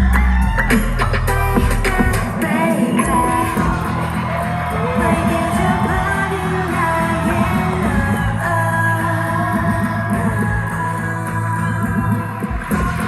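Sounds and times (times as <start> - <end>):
pop singing over band track: 0.0 - 13.0.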